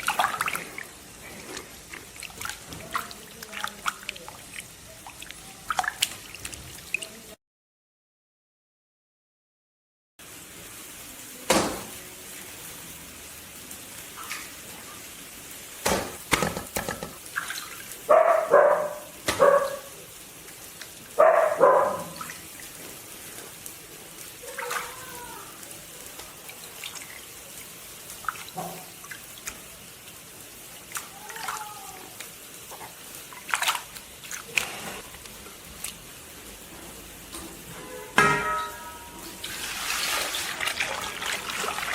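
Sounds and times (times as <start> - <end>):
water splashing and dripping: 0.0 - 7.4, 14.0 - 15.0, 15.8 - 41.9
dog barking: 18.1 - 20.0, 21.2 - 22.3.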